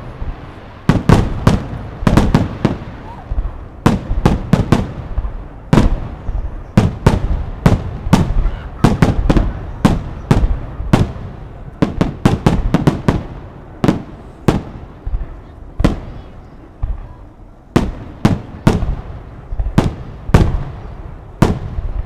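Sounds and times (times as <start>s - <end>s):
fireworks bursting with echo: 0.0s - 22.0s.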